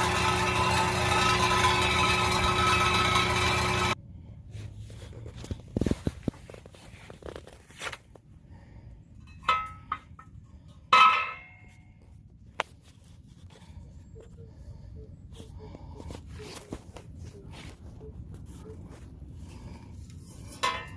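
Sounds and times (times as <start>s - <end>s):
car engine running: 0.0s - 4.0s
knocks and metal clanks: 9.2s - 11.8s, 20.5s - 20.9s.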